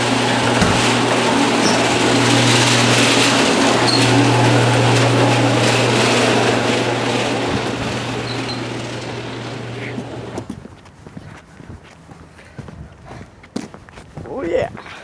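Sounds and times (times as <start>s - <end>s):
engine running: 0.0s - 10.5s.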